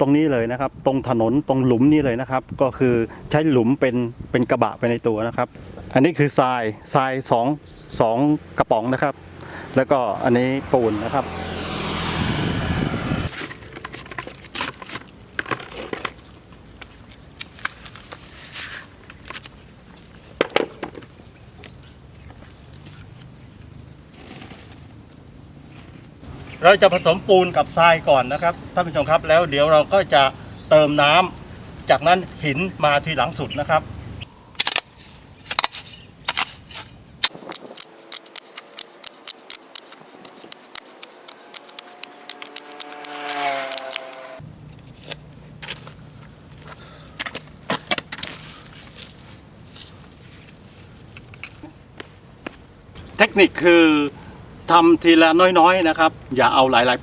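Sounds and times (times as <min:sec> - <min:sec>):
hand tool scraping cement and sand: 0:35.6 - 0:44.4.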